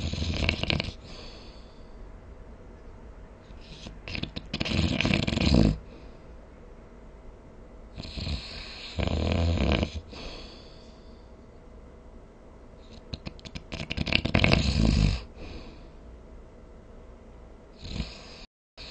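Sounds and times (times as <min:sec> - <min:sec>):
person snoring: 0:00.0 - 0:01.7, 0:03.6 - 0:05.9, 0:08.0 - 0:10.7, 0:12.9 - 0:15.7, 0:17.8 - 0:18.9.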